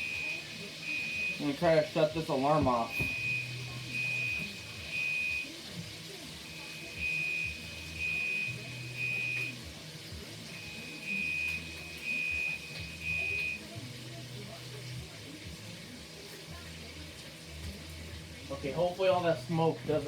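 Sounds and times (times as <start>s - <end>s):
smoke alarm beeping: 0.0s - 5.6s, 6.5s - 9.6s, 10.5s - 13.7s.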